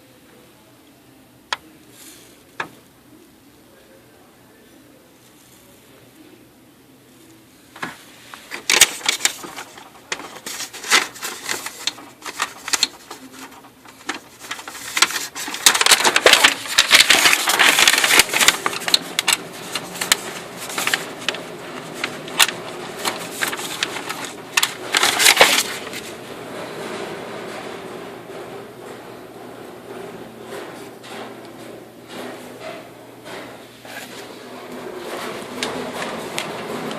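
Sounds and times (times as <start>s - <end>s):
laser printer grinding clatter: 8.5s - 29.0s.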